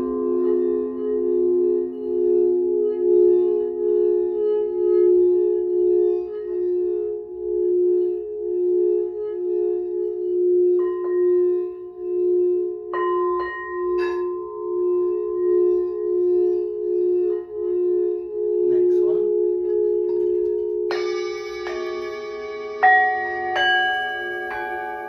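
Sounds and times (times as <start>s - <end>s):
low singing bowl droning: 0.0s - 25.0s
higher singing bowl struck: 20.9s - 25.0s.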